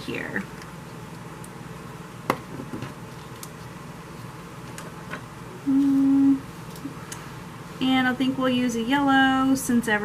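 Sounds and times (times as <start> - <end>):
woman humming: 5.6 - 6.5.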